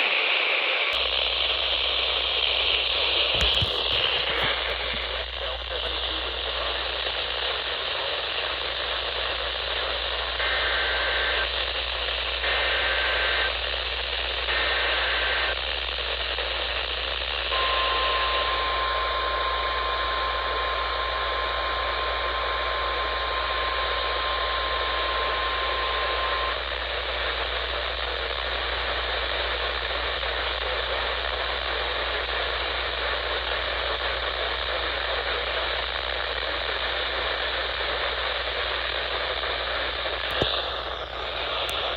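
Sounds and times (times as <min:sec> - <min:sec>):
static hiss: 0:00.0 - 0:41.9
steady warning alarm tone: 0:17.6 - 0:26.5.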